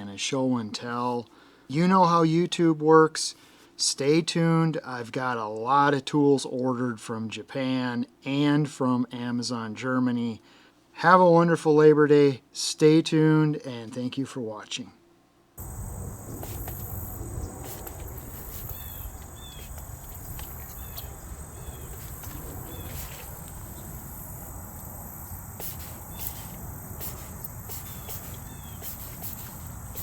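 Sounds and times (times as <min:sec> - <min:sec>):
high-pitched insect drone: 0:15.6 - 0:30.0
short chirps: 0:25.6 - 0:30.0.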